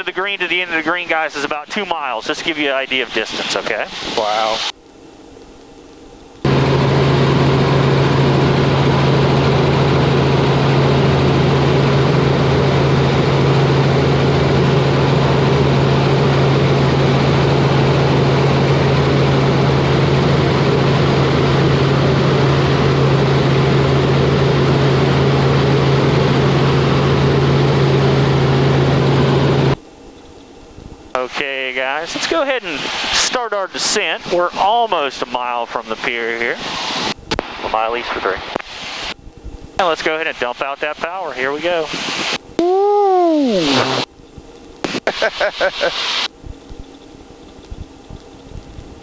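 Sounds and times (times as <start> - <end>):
helicopter engine and rotor drone: 0.0 - 36.6, 44.0 - 49.0.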